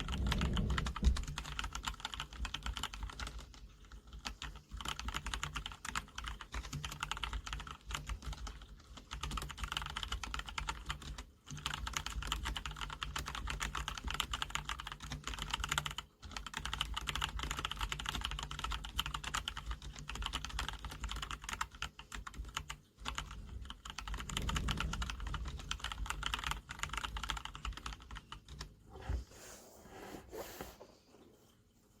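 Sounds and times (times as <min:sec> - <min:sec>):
steady low hum: 0:23.0 - 0:32.0.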